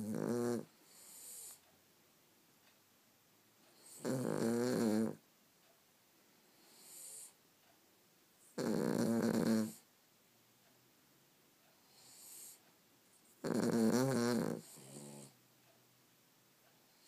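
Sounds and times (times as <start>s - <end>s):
dog snoring: 0.0s - 1.6s, 3.8s - 5.2s, 6.5s - 7.4s, 8.5s - 9.9s, 11.8s - 12.6s, 13.4s - 15.4s.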